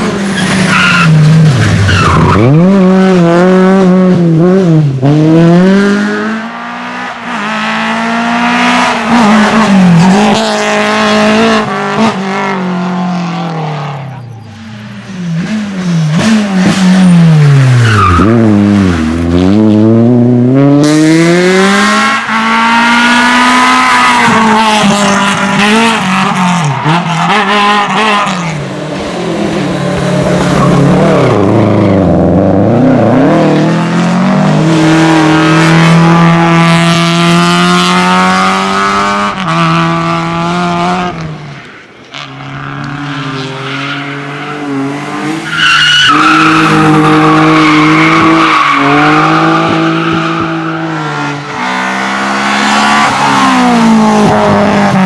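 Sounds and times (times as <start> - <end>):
tyres squealing and skidding: 0.0 - 3.2, 8.7 - 19.5, 22.2 - 32.2, 41.5 - 55.0
rally car engine revving: 0.0 - 55.0.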